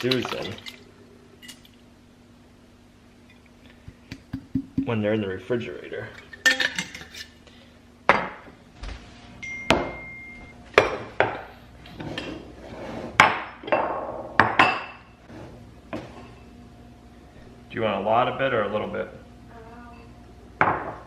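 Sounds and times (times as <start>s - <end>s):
kitchenware knocks and clinks: 10.8s - 11.4s, 13.2s - 15.1s.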